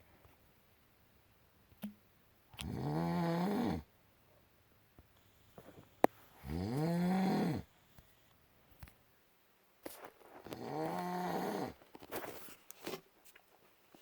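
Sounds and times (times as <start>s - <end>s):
man snoring loudly: 2.6s - 3.8s, 6.4s - 7.7s, 10.6s - 11.8s.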